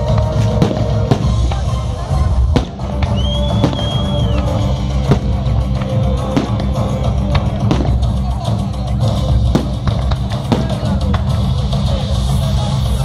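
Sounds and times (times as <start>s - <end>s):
firework bangs: 0.0s - 8.1s, 9.4s - 11.5s
music with heavy drum beat: 0.0s - 13.0s
high whistle: 3.1s - 4.7s.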